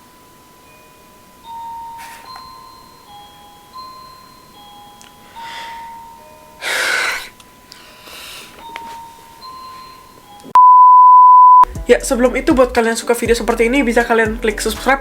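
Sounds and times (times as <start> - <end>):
simple melody of held notes: 0.0 - 10.6.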